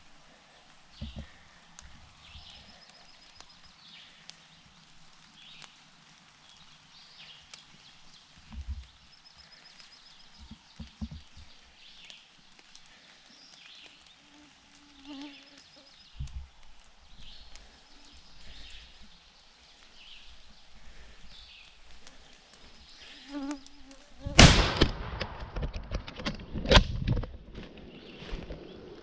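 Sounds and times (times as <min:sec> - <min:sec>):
faint birdsong: 0:00.0 - 0:24.2, 0:27.7 - 0:29.0
sharp crack: 0:20.8 - 0:28.6
shotgun blast: 0:24.3 - 0:25.6.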